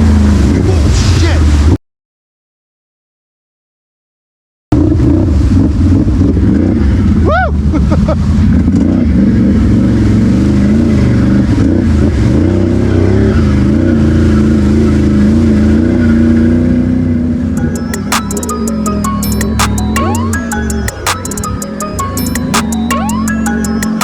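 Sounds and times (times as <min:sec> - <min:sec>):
quad bike engine revving: 0:00.0 - 0:01.8, 0:04.8 - 0:24.0
music: 0:17.6 - 0:24.0.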